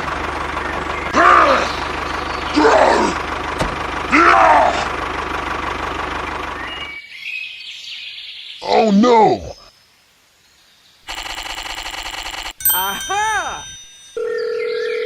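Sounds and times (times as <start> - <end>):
small engine running: 0.0 - 6.9.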